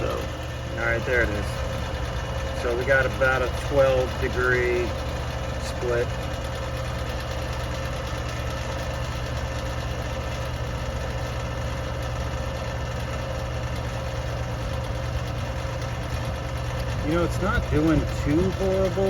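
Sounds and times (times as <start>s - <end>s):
air conditioner humming: 0.0s - 6.9s.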